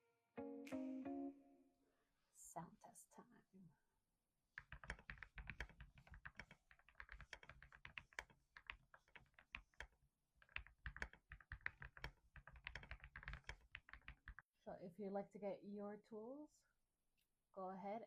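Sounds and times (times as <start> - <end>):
mechanical keyboard typing: 4.6 - 14.4.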